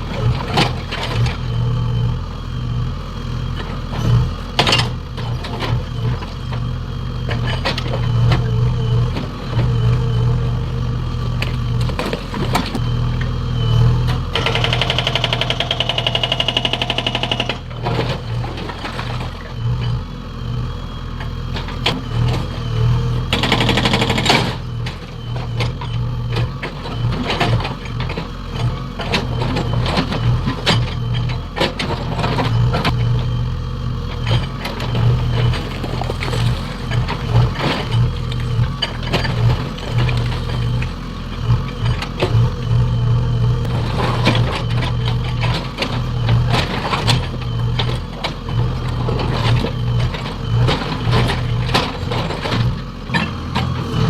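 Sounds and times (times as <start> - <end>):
diesel engine running: 0.0 - 54.0
hydraulic breaker hammering: 14.3 - 17.8, 23.3 - 24.6.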